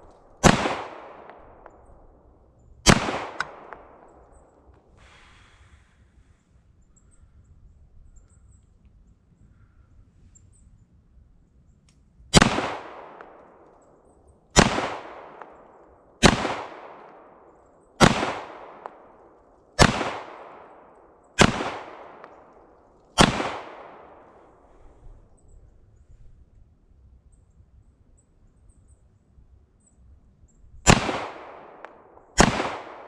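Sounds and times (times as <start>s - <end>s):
pistol shots: 0.4s - 1.9s, 2.8s - 4.4s, 12.3s - 13.7s, 14.6s - 24.4s, 30.8s - 33.0s.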